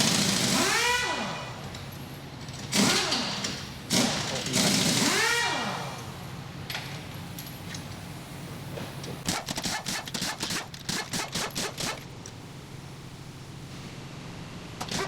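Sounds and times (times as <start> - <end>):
impact wrench whine: 9.3 - 12.3, 14.8 - 15.0
impact wrench hammering: 14.8 - 15.0.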